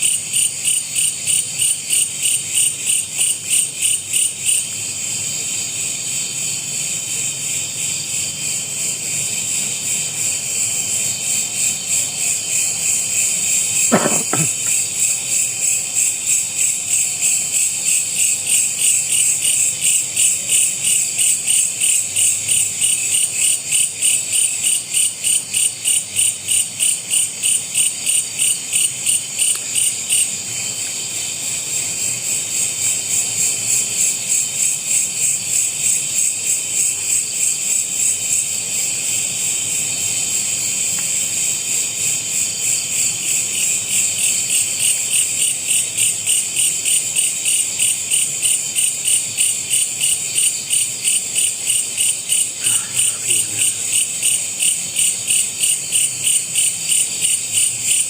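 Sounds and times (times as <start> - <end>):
crickets chirping: 0.0 - 58.0
short knock: 13.9 - 14.8.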